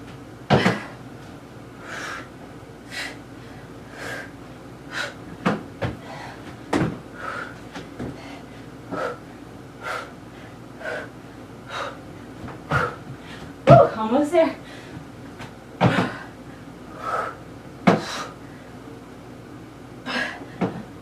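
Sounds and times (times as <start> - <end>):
person breathing hard: 1.8 - 2.3, 2.9 - 5.2, 6.0 - 6.5, 7.2 - 12.0, 15.8 - 18.7.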